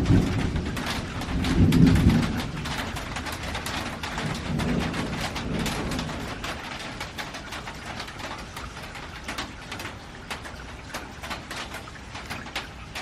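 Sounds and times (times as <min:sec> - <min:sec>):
thunder rumble: 0:00.0 - 0:07.2
rain pattering on a metal roof: 0:00.0 - 0:13.0.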